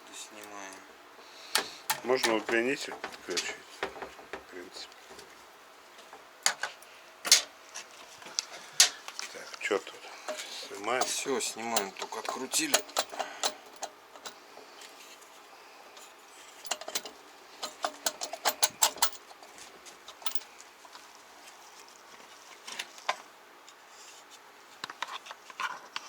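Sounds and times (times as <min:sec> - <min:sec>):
metal tools clinking: 0:01.9 - 0:04.3, 0:10.3 - 0:14.5, 0:16.5 - 0:20.5.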